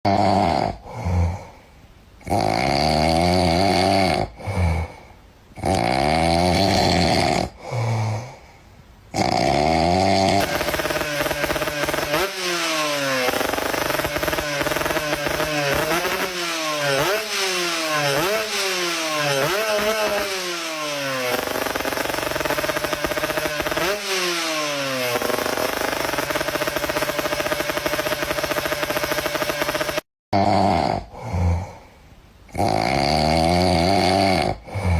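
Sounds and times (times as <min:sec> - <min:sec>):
small engine idling and revving: 0:05.6 - 0:07.5, 0:09.2 - 0:30.1.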